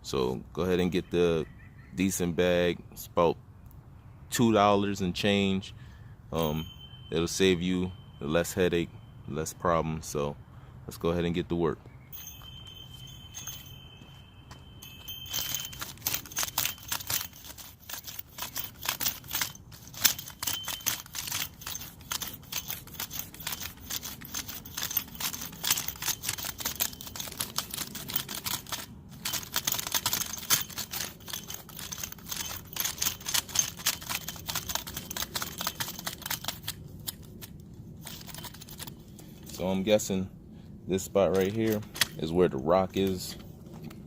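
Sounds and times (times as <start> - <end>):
cultivator tines scratching soil: 14.8 - 40.1, 41.0 - 44.0.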